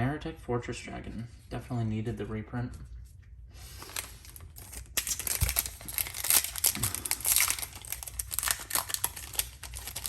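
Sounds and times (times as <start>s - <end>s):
foil wrapper crinkling and tearing: 3.7s - 10.0s.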